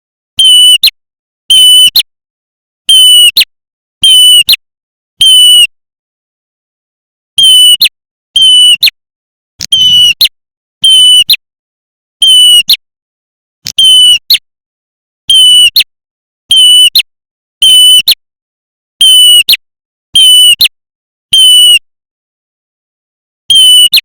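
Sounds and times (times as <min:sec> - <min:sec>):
harsh buzzy bird calls: 0:09.7 - 0:11.3.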